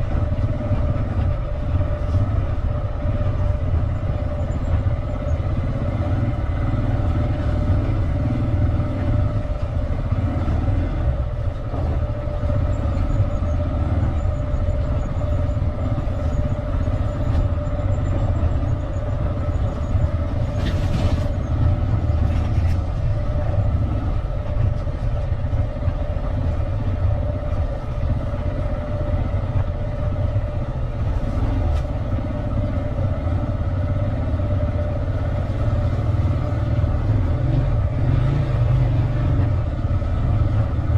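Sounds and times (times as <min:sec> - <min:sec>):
vehicle engine running: 0:00.0 - 0:40.9.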